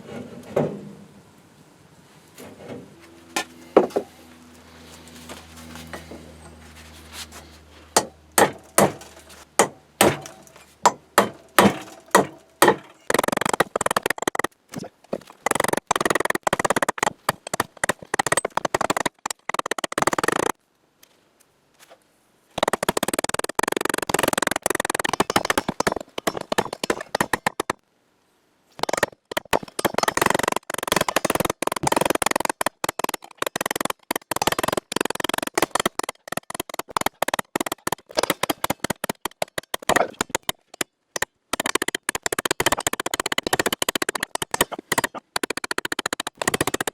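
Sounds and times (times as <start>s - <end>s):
hammer striking metal drift: 8.0s - 14.4s.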